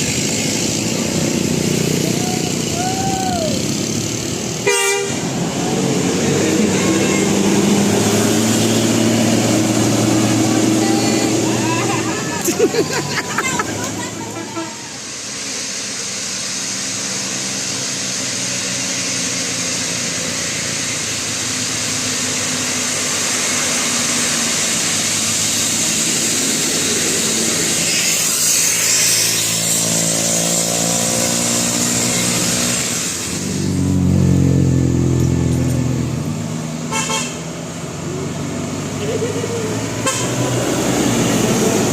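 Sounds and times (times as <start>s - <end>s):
heavy engine: 0.0s - 41.9s
road noise hiss: 0.0s - 41.9s
vehicle engines passing: 0.0s - 41.9s.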